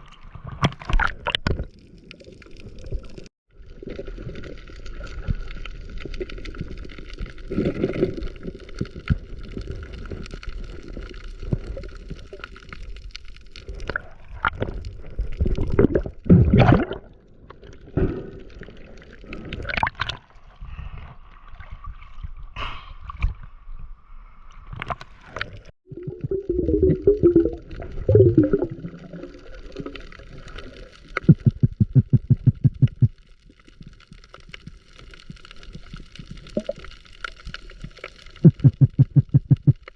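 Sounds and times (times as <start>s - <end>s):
water gurgling and sloshing: 0.0s - 39.9s
rapid bubbling pulses: 25.9s - 29.3s, 31.2s - 33.2s, 38.4s - 39.9s.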